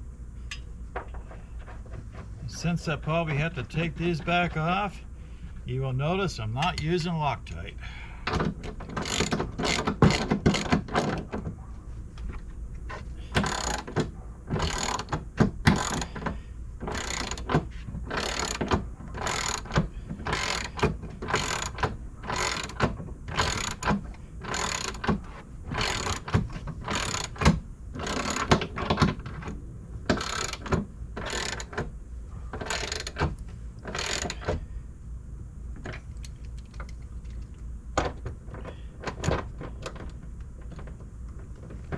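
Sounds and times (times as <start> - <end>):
ratchet wrench clicking: 8.9 - 11.1, 13.4 - 14.0, 14.6 - 16.2, 16.8 - 25.1, 25.7 - 28.6, 30.1 - 31.8, 32.6 - 34.5.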